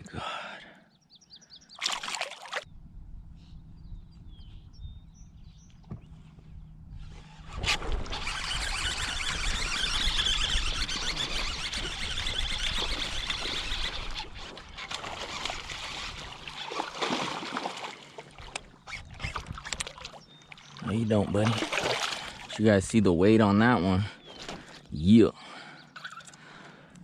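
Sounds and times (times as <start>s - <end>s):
water splashing and trickling: 1.8s - 2.7s, 7.9s - 22.9s.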